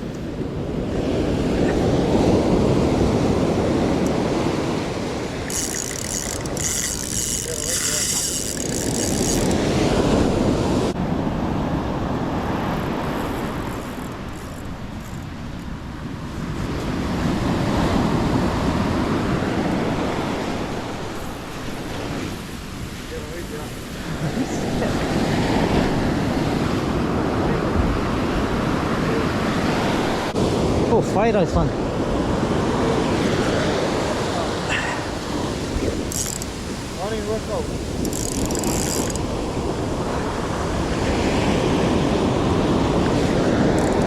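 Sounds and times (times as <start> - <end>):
ocean wave breaking: 0.0 - 14.1, 16.6 - 44.0
fishing reel whirring clicks: 5.4 - 9.7, 13.2 - 15.7, 36.1 - 36.6, 38.0 - 39.3, 43.7 - 44.0.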